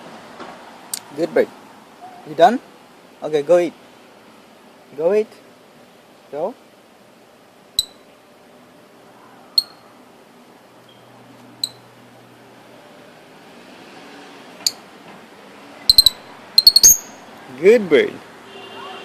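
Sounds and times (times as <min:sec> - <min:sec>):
lovebird chirping: 0:07.8 - 0:08.0, 0:09.5 - 0:09.8, 0:10.9 - 0:11.9, 0:15.9 - 0:17.2.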